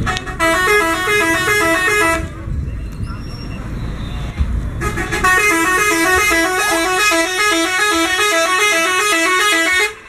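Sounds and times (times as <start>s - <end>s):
musical bus horn playing tune: 0.0s - 2.4s, 4.8s - 10.0s.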